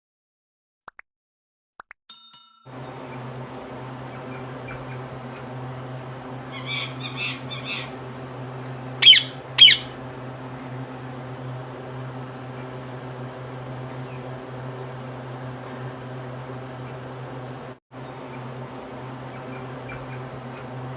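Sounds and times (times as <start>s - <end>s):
steady low hum: 2.8s - 20.9s
parakeets chattering and squawking: 4.0s - 10.0s.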